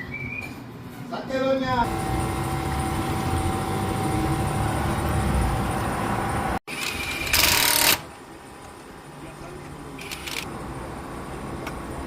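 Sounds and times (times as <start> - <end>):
mechanical running noise: 1.8 - 8.1, 9.9 - 12.0.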